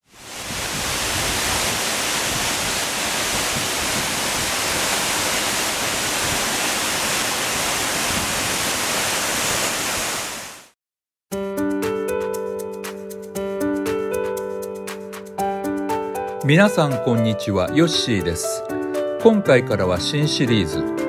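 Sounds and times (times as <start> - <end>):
falling water rushing: 0.0 - 10.8.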